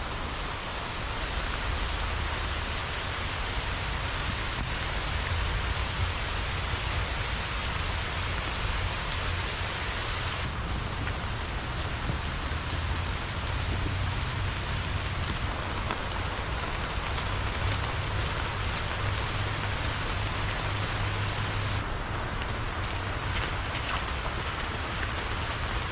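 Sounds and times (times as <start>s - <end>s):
heavy rain falling: 0.0s - 25.9s
raindrops ticking close by: 0.0s - 25.9s.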